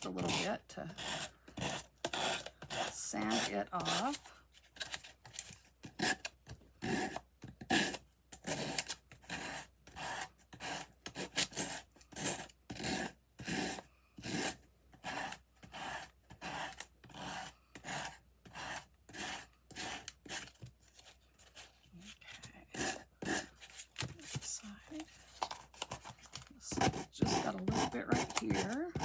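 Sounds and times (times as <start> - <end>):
sandpaper rubbing on paper: 26.8 - 29.0.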